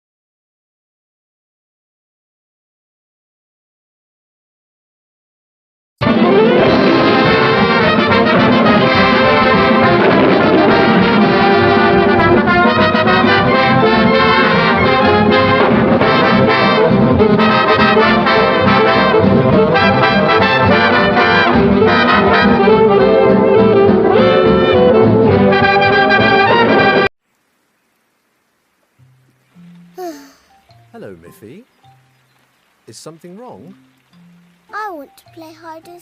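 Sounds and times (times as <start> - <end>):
upbeat brass band music: 6.0 - 27.1.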